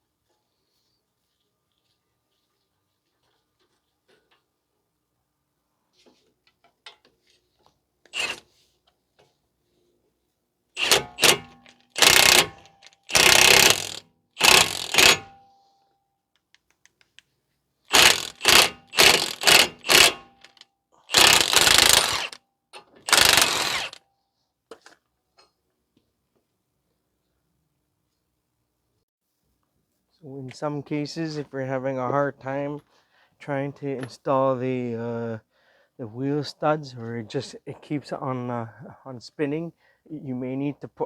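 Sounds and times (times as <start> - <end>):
impact wrench hammering: 10.8 - 15.4, 17.9 - 22.4, 23.1 - 24.0.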